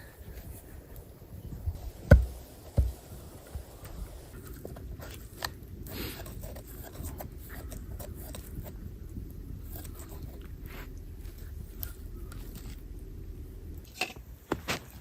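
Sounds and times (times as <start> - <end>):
knife scraping wood: 4.5 - 8.8, 9.7 - 12.8.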